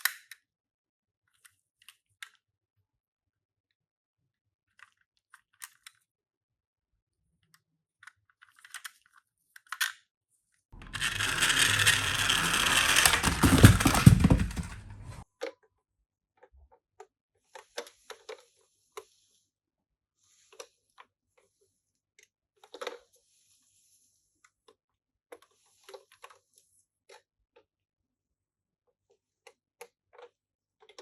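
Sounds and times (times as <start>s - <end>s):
rough scraping and rattling: 10.8s - 15.2s
toy cars clicking and tapping: 10.8s - 15.2s.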